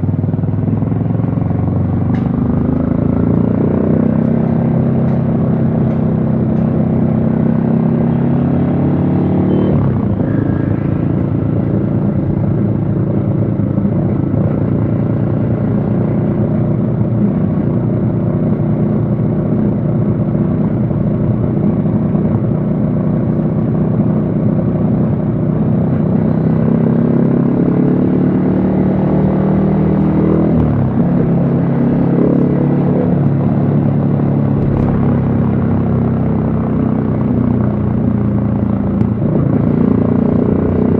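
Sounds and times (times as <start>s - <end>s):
motorcycle engine changing gears: 26.0s - 40.9s.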